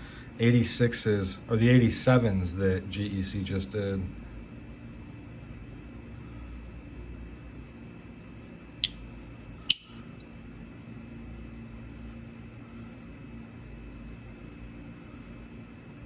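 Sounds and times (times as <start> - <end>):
low room hum: 0.0 - 16.0
pocket knife clicks: 9.7 - 10.0.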